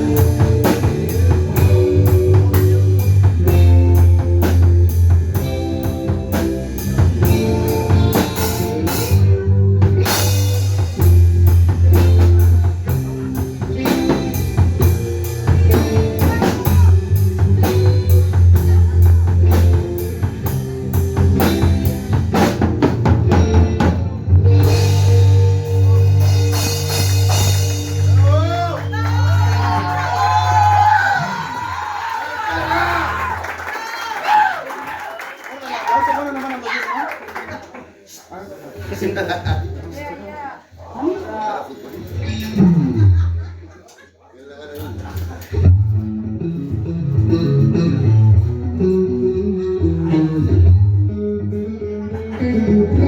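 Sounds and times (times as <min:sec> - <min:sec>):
drum kit steady beat: 0:00.0 - 0:31.0
bass and guitar chords: 0:00.0 - 0:31.7, 0:42.1 - 0:43.4, 0:45.2 - 0:53.0.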